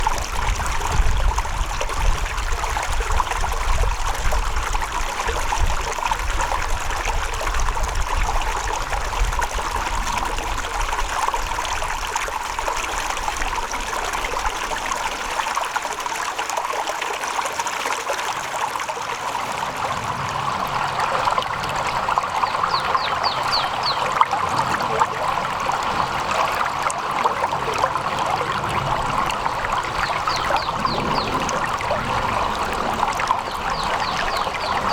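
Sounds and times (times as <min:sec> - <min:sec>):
stream water trickling: 0:00.0 - 0:34.9.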